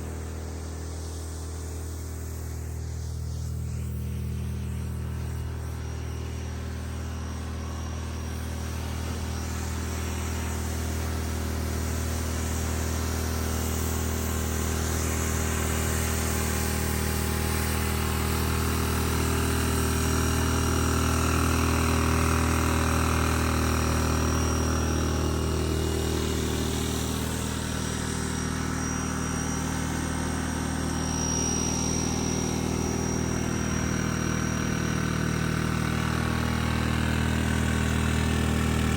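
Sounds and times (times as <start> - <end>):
small engine droning: 0.0 - 38.9.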